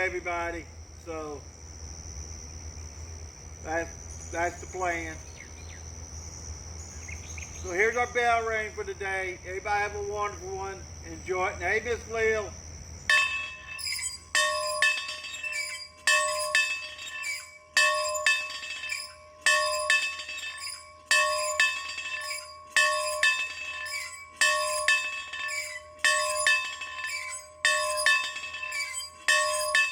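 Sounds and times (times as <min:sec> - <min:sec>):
bell ringing: 0:13.1 - 0:29.9.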